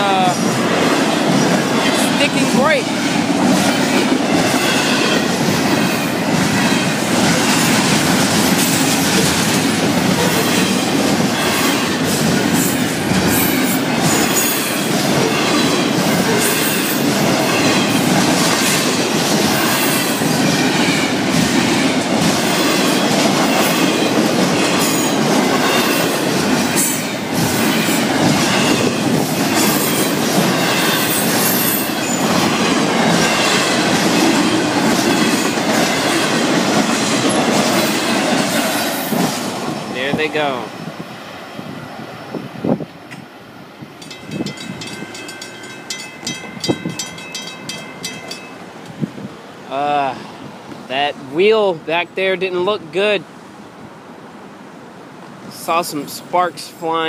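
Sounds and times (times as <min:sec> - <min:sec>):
freight train rolling past: 0:00.0 - 0:57.0
wheels clacking over rail joints: 0:00.2 - 0:40.6, 0:43.9 - 0:49.0.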